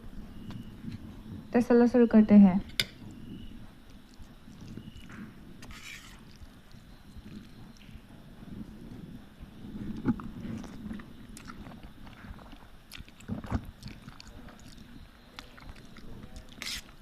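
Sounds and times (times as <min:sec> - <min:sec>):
person chewing noodles: 0:03.9 - 0:07.8, 0:09.8 - 0:17.0.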